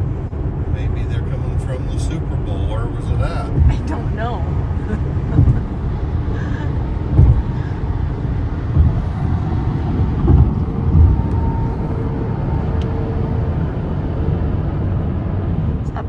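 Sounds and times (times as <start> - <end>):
road and tyre noise in car: 0.0 - 16.0
low thumps: 2.3 - 13.9.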